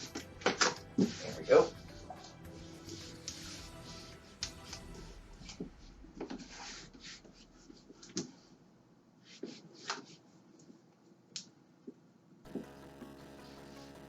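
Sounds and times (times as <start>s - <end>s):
background music: 0.0s - 7.2s, 12.5s - 14.0s.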